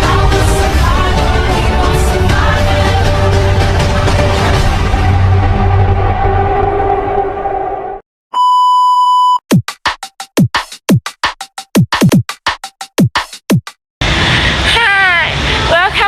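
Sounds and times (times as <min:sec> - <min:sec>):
background music: 0:00.0 - 0:07.8
steady beep: 0:08.4 - 0:09.4.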